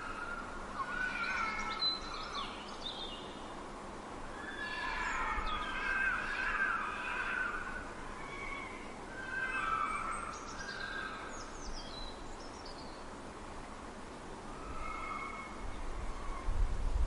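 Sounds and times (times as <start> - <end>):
outdoor background noise: 0.0 - 17.0
fox whining calls: 4.4 - 11.1, 14.6 - 16.5.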